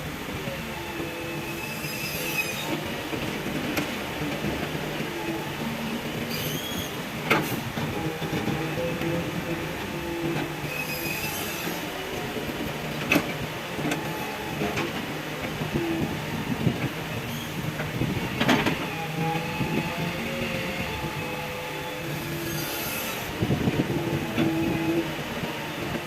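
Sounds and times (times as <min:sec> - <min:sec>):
hydraulics whining: 0:00.1 - 0:26.0
high squeal: 0:01.2 - 0:02.8, 0:06.3 - 0:07.0, 0:10.6 - 0:11.9, 0:19.2 - 0:23.4.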